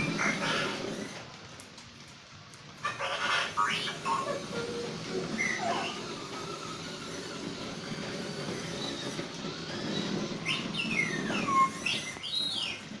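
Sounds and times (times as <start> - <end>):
robot electronic whistles and beeps: 10.4 - 12.8.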